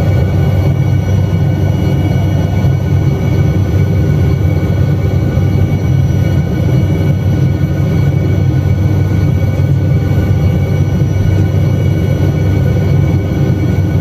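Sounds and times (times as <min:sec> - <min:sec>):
helicopter engine and rotor drone: 0:00.0 - 0:14.0
helicopter whine: 0:00.0 - 0:14.0.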